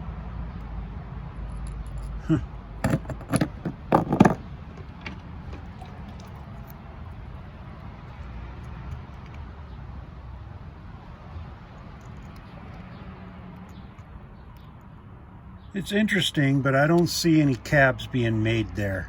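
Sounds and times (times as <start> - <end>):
rock pieces clacking: 1.8 - 4.4.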